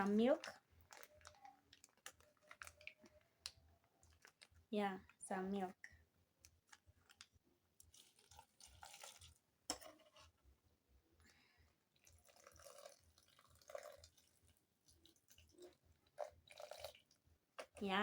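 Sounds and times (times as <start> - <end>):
milk trickling: 0.0 - 4.6, 6.6 - 10.1, 11.9 - 17.9.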